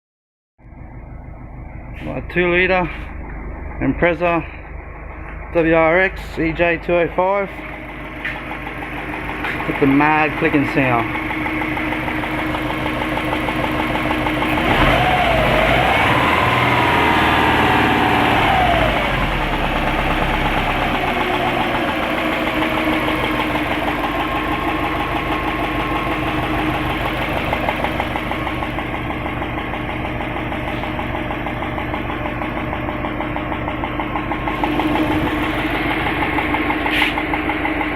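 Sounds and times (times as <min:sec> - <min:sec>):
car engine idling and revving: 0:00.6 - 0:37.9
fast clicking from engine: 0:08.4 - 0:17.1, 0:31.4 - 0:37.9.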